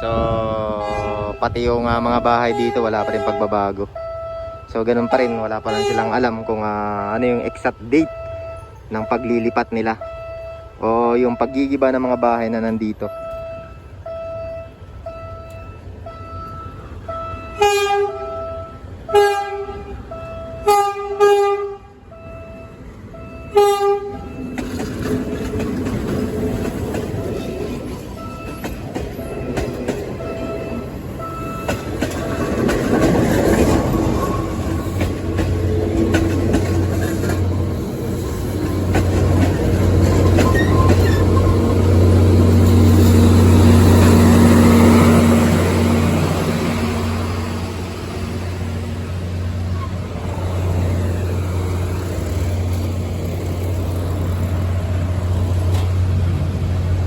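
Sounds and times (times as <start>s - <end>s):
train horn blasts: 0.0s - 11.4s, 13.1s - 22.6s, 23.2s - 24.4s
train passing rumble: 0.0s - 57.0s.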